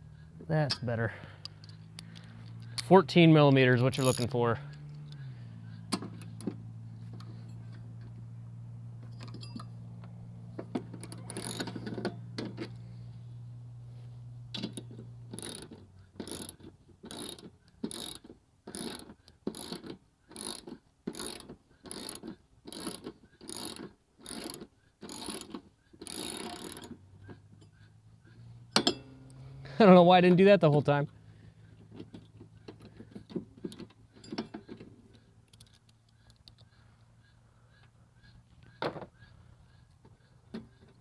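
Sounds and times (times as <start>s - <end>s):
ratchet wrench clicking: 10.9s - 12.1s, 14.6s - 27.0s.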